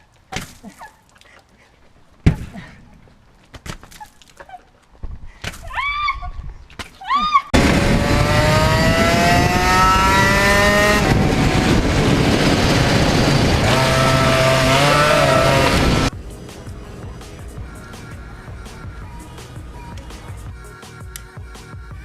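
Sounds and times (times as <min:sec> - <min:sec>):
go-kart engine running hard: 0:07.6 - 0:16.1.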